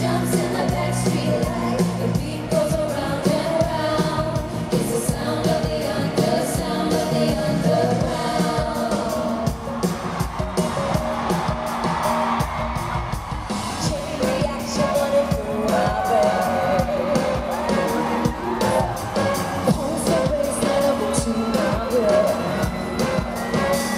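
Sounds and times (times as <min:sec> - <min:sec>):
live pop band with singing: 0:00.0 - 0:23.9
crowd whooping: 0:09.5 - 0:23.9.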